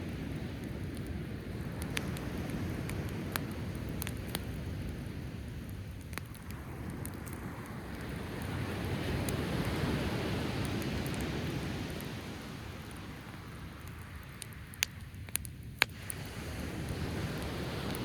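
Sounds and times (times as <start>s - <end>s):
driftwood fire popping: 0.0s - 18.0s
waves washing on shore: 6.3s - 14.2s, 15.9s - 18.0s.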